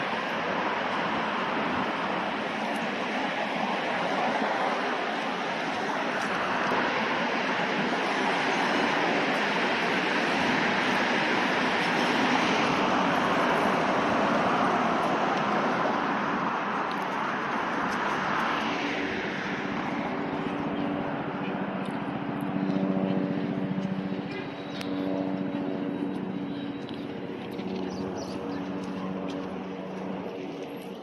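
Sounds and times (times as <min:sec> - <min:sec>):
vehicles passing on highway: 0:00.0 - 0:31.0
engine hum with pitched tones: 0:18.8 - 0:31.0.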